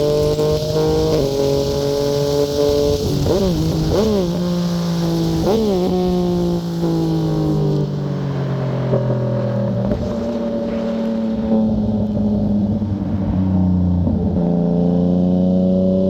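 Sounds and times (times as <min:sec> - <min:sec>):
motorcycle engine throttle blips: 0:00.0 - 0:15.2.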